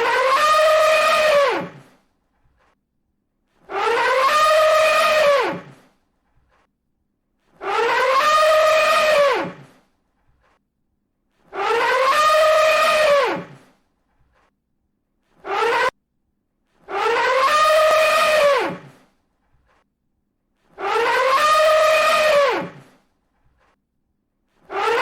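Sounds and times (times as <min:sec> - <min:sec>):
elephant trumpeting: 0:00.0 - 0:01.9, 0:03.6 - 0:05.8, 0:07.6 - 0:09.8, 0:11.5 - 0:13.7, 0:15.4 - 0:15.9, 0:16.9 - 0:19.0, 0:20.7 - 0:23.0, 0:24.7 - 0:25.0.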